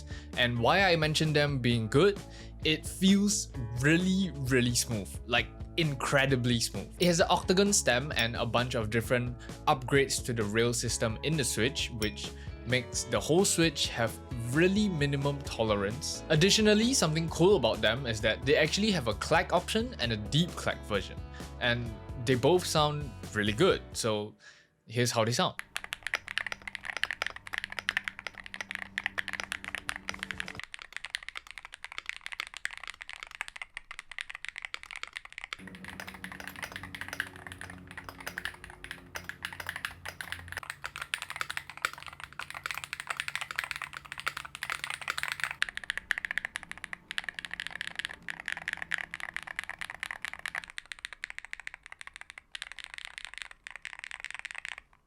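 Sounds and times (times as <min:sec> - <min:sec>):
fast typing on keyboard: 0:05.8 - 0:08.8, 0:25.6 - 0:55.0.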